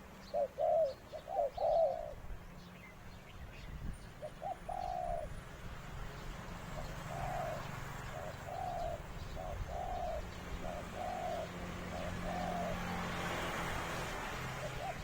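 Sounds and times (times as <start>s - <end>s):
dove cooing: 0.0s - 2.3s, 4.2s - 5.4s, 6.7s - 13.5s, 14.2s - 15.0s.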